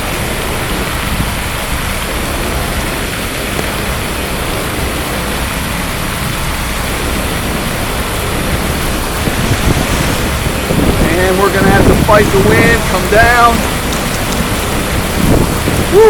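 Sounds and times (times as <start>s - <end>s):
heavy rain: 0.0s - 16.0s
wind buffeting microphone: 0.0s - 16.0s.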